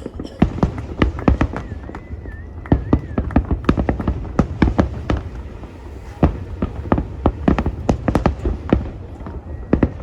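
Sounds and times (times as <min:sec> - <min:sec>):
fireworks bangs and crackling: 0:00.0 - 0:10.0
faint wavering whistle: 0:01.1 - 0:04.4, 0:09.0 - 0:10.0.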